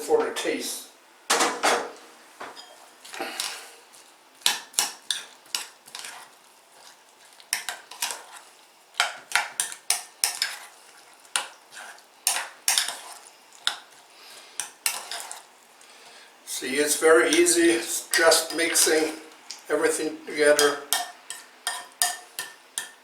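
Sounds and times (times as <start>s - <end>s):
utensil scraping a bowl: 4.8s - 7.0s, 9.1s - 15.5s.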